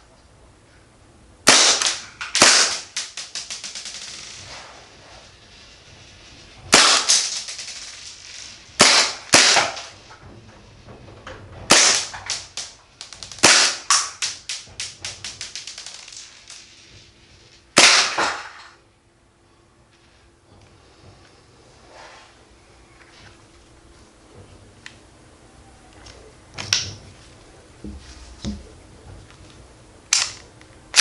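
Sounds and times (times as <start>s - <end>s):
airsoft pistol shots: 1.4s - 4.0s, 6.7s - 7.8s, 8.8s - 10.0s, 11.7s - 12.7s, 13.3s - 15.7s, 17.8s - 18.7s.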